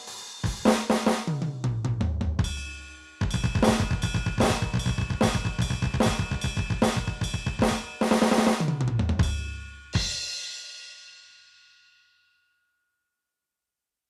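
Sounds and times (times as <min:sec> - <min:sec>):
electronic drum beat: 0:00.0 - 0:10.3
tom fill: 0:00.0 - 0:10.4.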